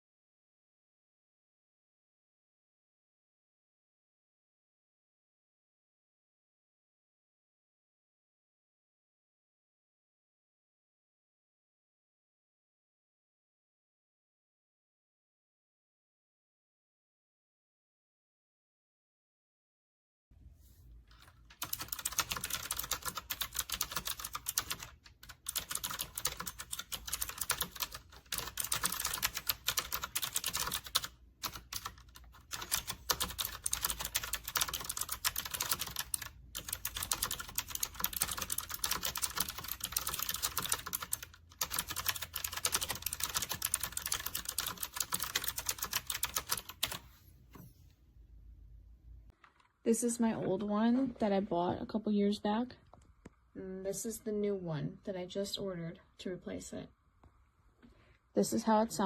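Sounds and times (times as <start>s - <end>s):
mechanical keyboard typing: 21.1s - 47.0s.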